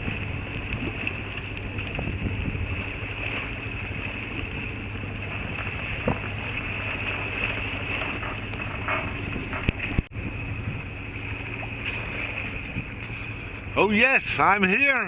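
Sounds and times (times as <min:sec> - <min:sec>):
low hum: 0:00.0 - 0:14.8
water noise: 0:00.0 - 0:15.0
wind: 0:00.0 - 0:15.0.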